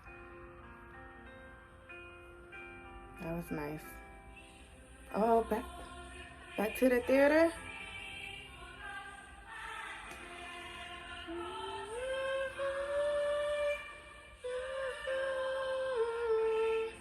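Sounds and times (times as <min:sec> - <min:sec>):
chorus singing long notes: 0:02.5 - 0:17.0.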